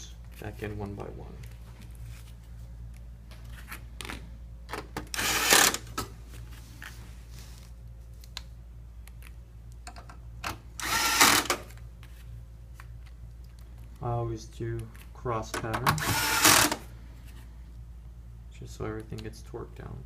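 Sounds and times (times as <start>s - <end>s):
electric screwdriver whirring: 5.1s - 5.8s, 10.8s - 11.6s, 16.0s - 16.8s.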